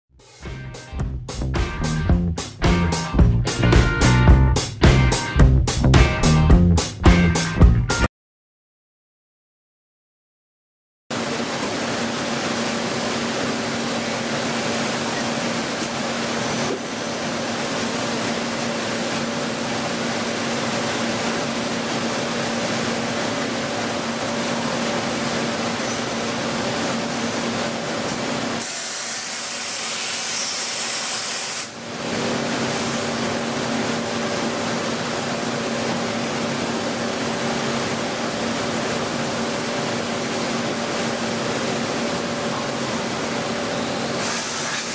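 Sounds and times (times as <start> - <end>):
coolant spray hissing: 28.6 - 31.8, 44.2 - 44.9.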